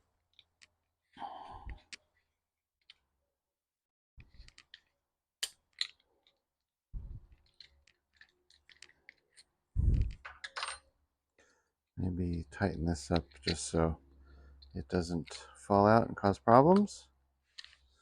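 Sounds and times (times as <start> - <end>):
tools and parts clicking: 0.2 - 0.8, 4.2 - 6.5, 7.3 - 11.0, 12.2 - 13.8, 16.7 - 18.0.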